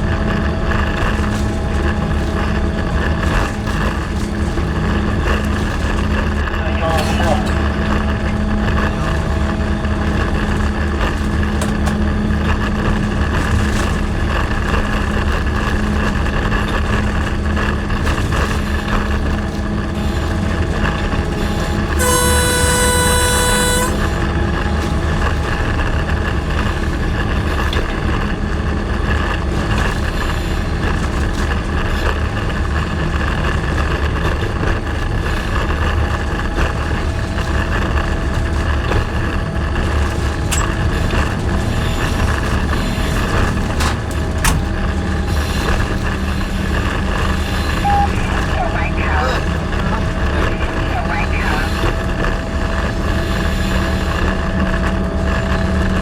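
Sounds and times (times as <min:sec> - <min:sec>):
diesel locomotive engine drone: 0:00.0 - 0:56.0
locomotive air horn blast: 0:21.3 - 0:24.9.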